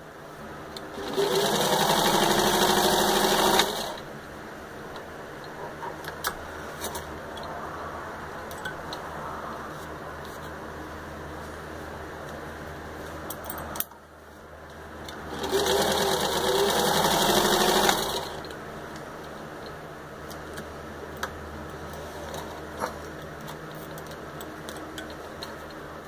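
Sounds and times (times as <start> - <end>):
sewing machine stitching: 0.9 - 4.0, 15.2 - 18.5.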